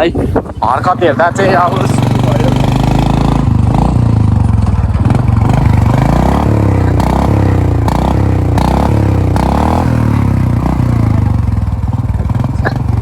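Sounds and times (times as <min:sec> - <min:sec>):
motorcycle engine revving: 0:00.6 - 0:13.0
exhaust backfire pops: 0:02.0 - 0:11.2.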